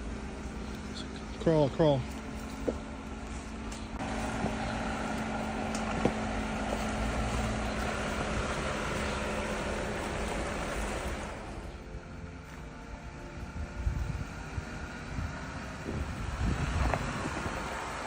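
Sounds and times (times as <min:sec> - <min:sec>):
off-road vehicle engine: 0:00.0 - 0:18.0
wind on microphone: 0:13.4 - 0:18.0.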